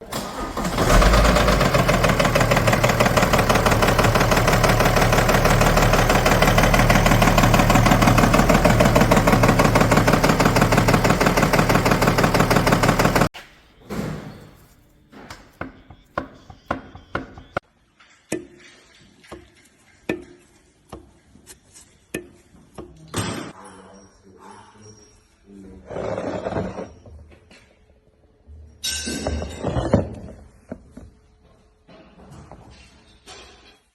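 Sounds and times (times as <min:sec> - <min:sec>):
diesel engine knocking: 0:00.6 - 0:13.3.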